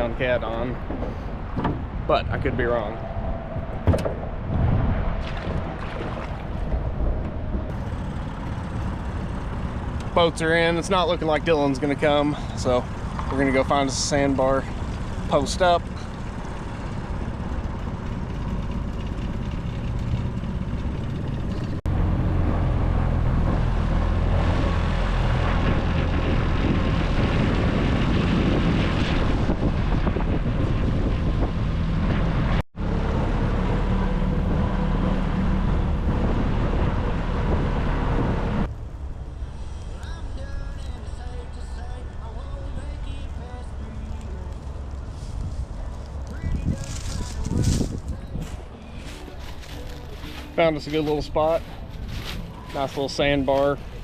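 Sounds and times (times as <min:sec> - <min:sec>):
outboard motor running: 0:07.7 - 0:21.8.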